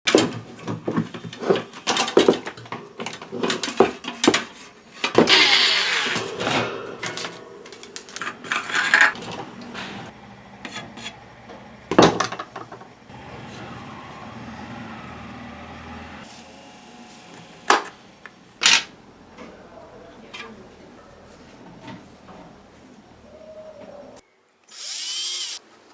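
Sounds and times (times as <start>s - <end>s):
fan parts clattering: 0.1s - 11.2s, 11.9s - 13.0s.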